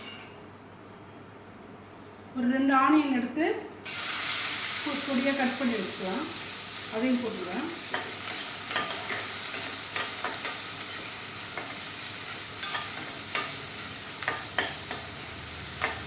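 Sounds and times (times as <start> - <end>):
onions sizzling in hot oil: 3.8 - 16.0.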